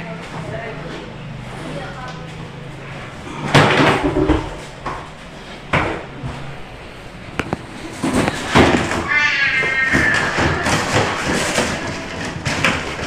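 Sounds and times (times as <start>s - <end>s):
objects clattering: 3.2s - 6.6s, 7.4s - 13.0s.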